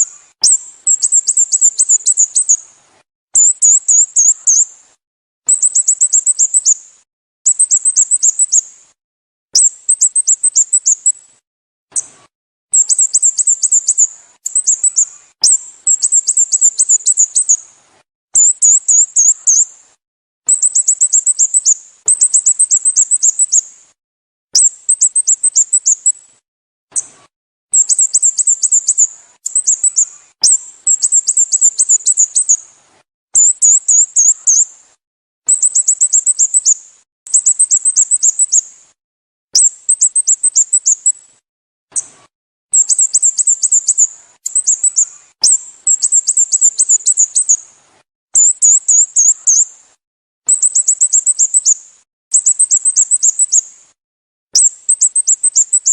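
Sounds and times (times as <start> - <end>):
bird chirping: 0.0 - 2.6, 3.4 - 4.8, 5.5 - 6.9, 7.5 - 8.7, 9.6 - 11.3, 11.9 - 17.7, 18.4 - 19.8, 20.5 - 23.7, 24.6 - 26.3, 26.9 - 32.7, 33.4 - 34.8, 35.5 - 38.8, 39.6 - 41.3, 42.0 - 47.7, 48.4 - 49.7, 50.5 - 53.7, 54.6 - 55.9.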